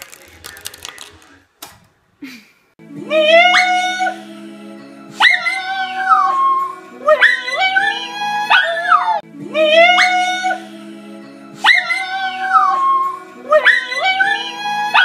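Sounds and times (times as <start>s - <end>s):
dog howling: 5.2s - 10.6s, 11.6s - 15.0s.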